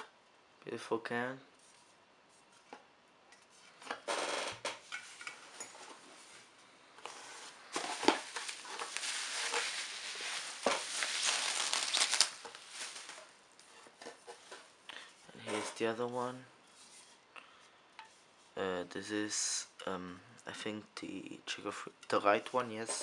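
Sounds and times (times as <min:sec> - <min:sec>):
packaging crinkling and rustling: 0:07.1 - 0:13.7.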